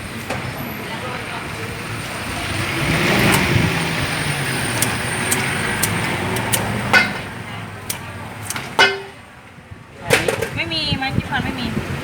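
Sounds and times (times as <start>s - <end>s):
road traffic rumble: 0.0s - 12.0s
sharp metallic clatter: 4.7s - 9.3s.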